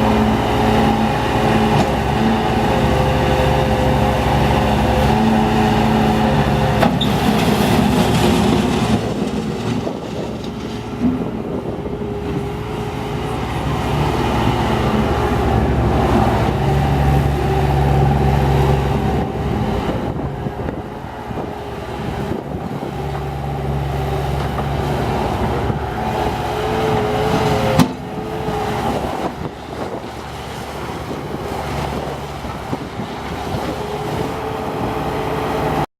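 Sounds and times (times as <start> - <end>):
diesel engine humming: 0.0 - 35.9.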